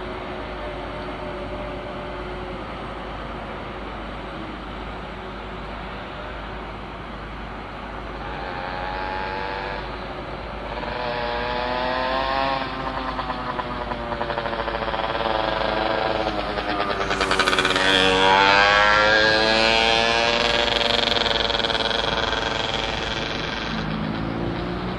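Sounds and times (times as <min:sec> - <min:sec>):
heavy machine engine revving: 0:07.6 - 0:24.9.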